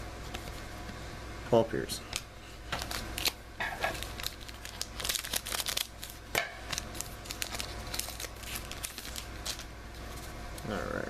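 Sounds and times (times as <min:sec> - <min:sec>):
foil wrapper tearing and crinkling: 0:02.7 - 0:09.7.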